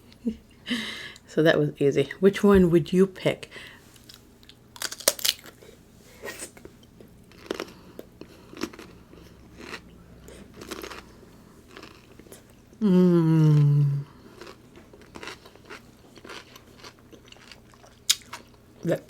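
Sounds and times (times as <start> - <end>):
crunchy chewing: 6.4 - 12.6, 14.2 - 18.6.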